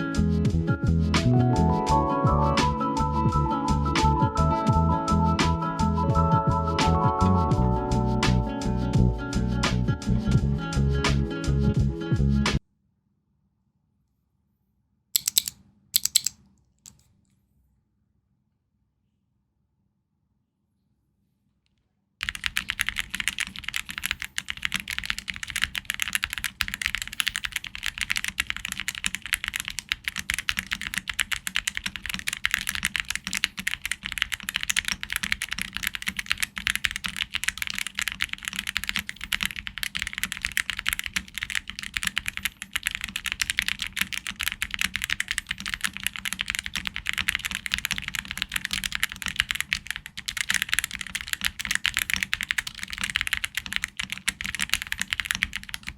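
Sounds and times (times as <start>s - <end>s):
mechanical keyboard typing: 15.2s - 17.0s, 22.2s - 55.9s.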